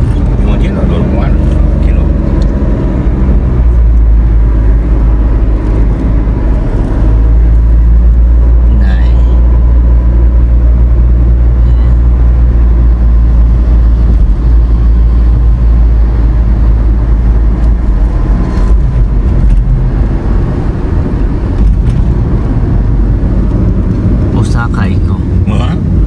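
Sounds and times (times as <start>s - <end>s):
car engine and road rumble: 0.0s - 26.0s.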